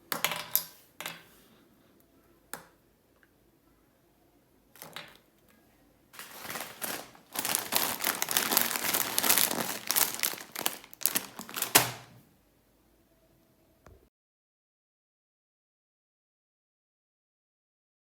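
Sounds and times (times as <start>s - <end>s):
candy wrapper crinkling: 6.2s - 12.1s.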